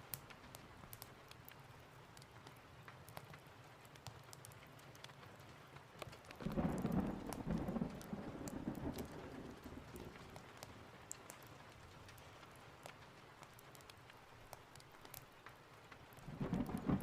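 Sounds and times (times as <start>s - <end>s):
sharp crackles and ticks: 0.0s - 17.0s
steady rain: 0.0s - 17.0s
thunder rumbling: 6.4s - 10.4s, 16.2s - 17.0s.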